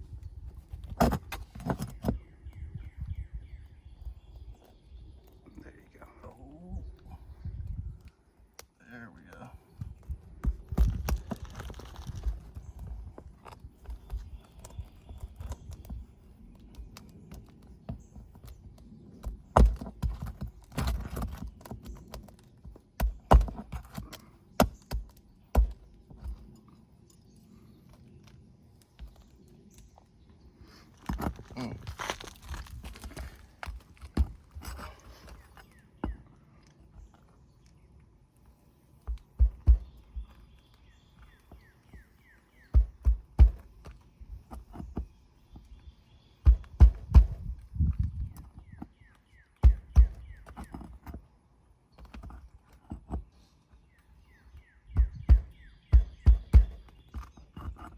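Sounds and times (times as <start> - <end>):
bird chirping: 1.3 - 31.8, 34.2 - 51.3, 51.9 - 57.9
knocks and taps on shingles: 9.7 - 12.6, 13.3 - 26.4, 39.0 - 40.4, 41.2 - 47.6, 48.5 - 51.2, 54.5 - 57.9
tool scraping shingles: 54.9 - 57.9.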